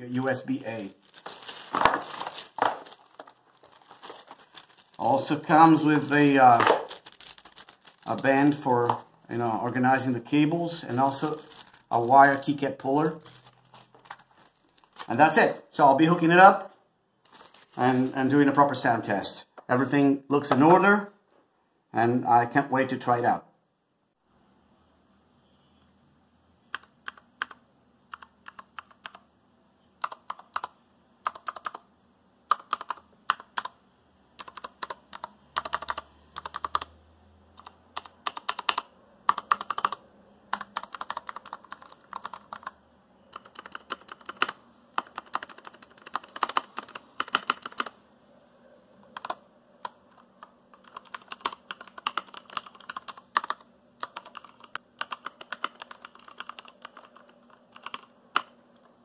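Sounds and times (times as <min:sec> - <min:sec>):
mechanical keyboard typing: 0:26.7 - 0:29.2, 0:30.0 - 0:31.8, 0:32.5 - 0:33.8, 0:34.4 - 0:36.9, 0:37.6 - 0:47.9, 0:49.1 - 0:58.5.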